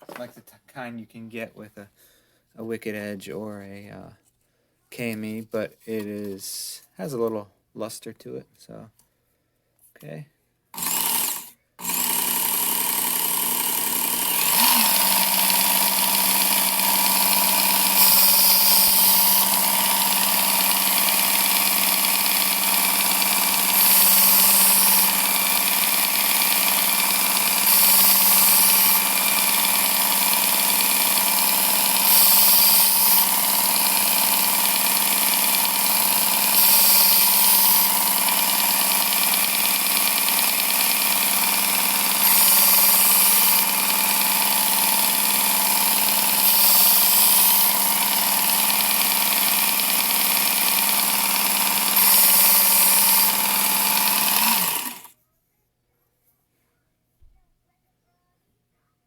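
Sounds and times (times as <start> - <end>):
belt sharpener motor hum: 10.8 - 55.1.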